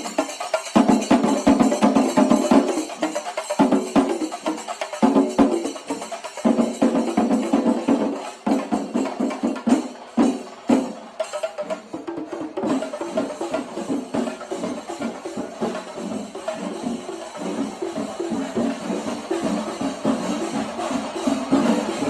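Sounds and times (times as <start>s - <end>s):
drums beaten with sticks: 0.0s - 22.0s
hand cymbals clashing: 0.0s - 22.0s.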